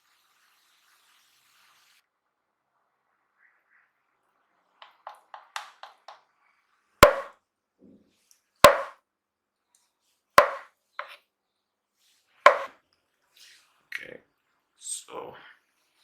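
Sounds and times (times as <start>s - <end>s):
kitchen utensils knocking: 7.0s - 7.3s, 8.7s - 8.9s, 10.4s - 11.1s, 12.5s - 12.7s.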